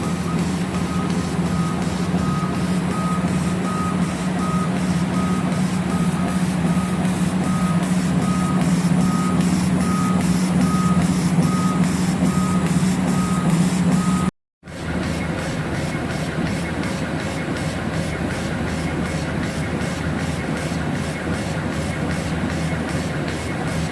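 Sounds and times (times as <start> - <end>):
laser engraver humming: 0.0 - 14.3
short high beeps: 0.0 - 14.3.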